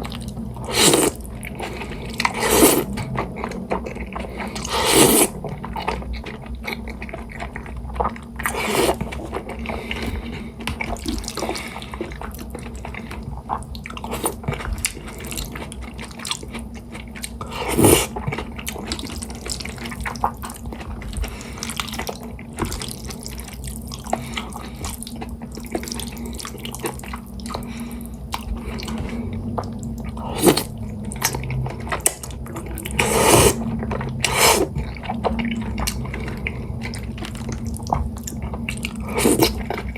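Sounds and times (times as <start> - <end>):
low steady hum: 0.0 - 39.9
person chewing noodles: 0.0 - 39.9
slurping noodles: 0.6 - 3.0, 4.2 - 5.4, 8.4 - 10.5, 17.5 - 18.2, 30.2 - 30.7, 32.8 - 34.9, 39.0 - 39.6.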